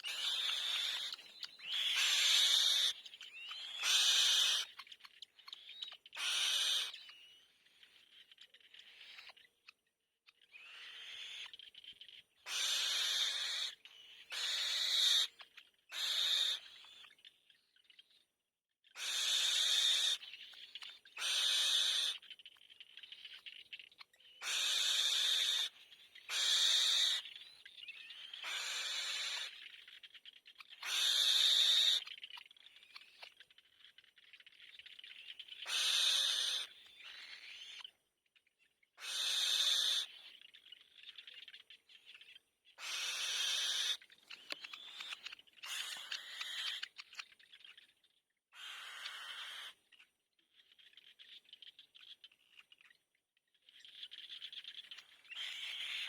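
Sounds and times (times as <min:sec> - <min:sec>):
nestling birds begging calls: 0:00.0 - 0:08.1, 0:10.6 - 0:17.1, 0:19.0 - 0:23.3, 0:24.2 - 0:30.1, 0:30.7 - 0:32.2, 0:34.8 - 0:37.9, 0:39.0 - 0:40.4, 0:42.7 - 0:47.2, 0:48.6 - 0:49.8.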